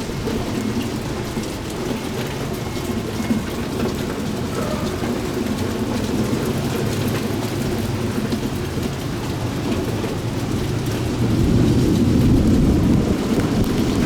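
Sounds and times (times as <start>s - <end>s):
heavy rain: 0.0s - 14.0s
low thunder rumble: 9.8s - 14.0s.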